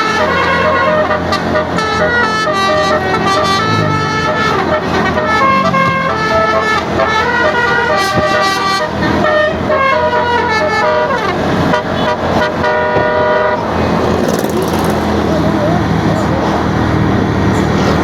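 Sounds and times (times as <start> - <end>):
bus horn playing a melody: 0.0 - 14.2.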